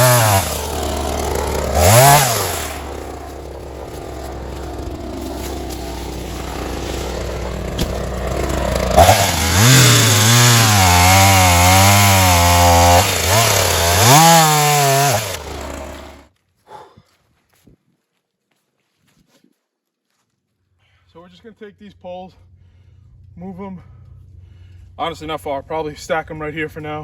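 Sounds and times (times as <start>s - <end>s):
chainsaw cutting wood: 0.0s - 16.3s.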